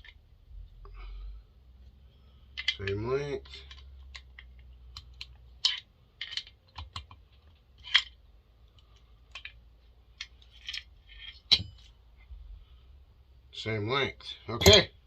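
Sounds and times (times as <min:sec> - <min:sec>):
metallic clicks of screws and tools: 0:02.5 - 0:07.2, 0:07.8 - 0:09.6, 0:10.2 - 0:11.9.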